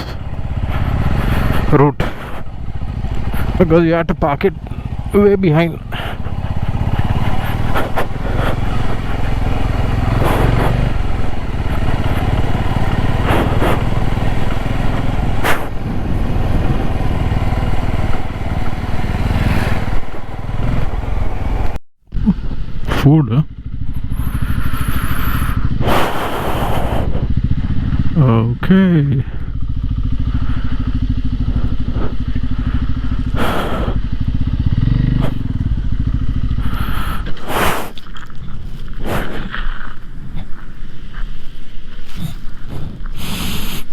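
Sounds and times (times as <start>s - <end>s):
motorcycle engine running: 0.0s - 43.9s
short noisy rushes: 6.0s - 21.7s.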